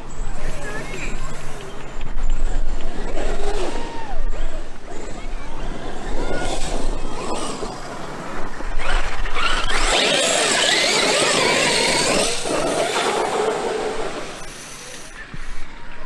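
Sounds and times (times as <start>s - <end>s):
electric motor whine: 5.1s - 15.6s.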